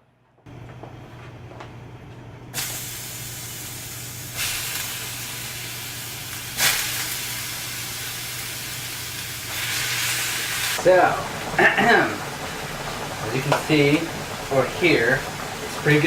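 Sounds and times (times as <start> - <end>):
steady low hum: 0.0 - 9.6
food sizzling in a pan: 2.6 - 16.0.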